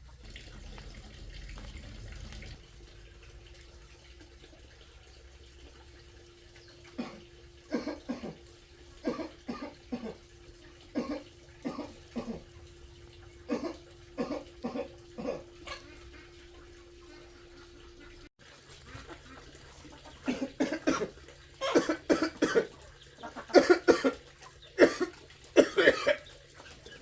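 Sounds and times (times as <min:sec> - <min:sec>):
man coughing: 0:20.3 - 0:22.7, 0:23.6 - 0:24.2, 0:24.8 - 0:26.2.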